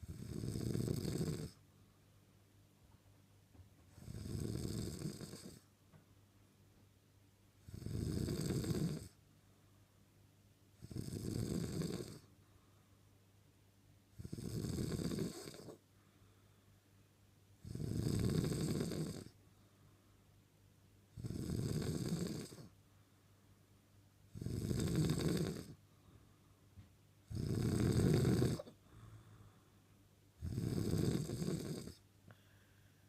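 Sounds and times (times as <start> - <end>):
person snoring: 0.0 - 1.6, 4.0 - 5.6, 7.6 - 9.2, 10.8 - 12.3, 14.2 - 15.8, 17.6 - 19.4, 21.2 - 22.7, 24.3 - 25.8, 27.3 - 29.4, 30.4 - 32.5.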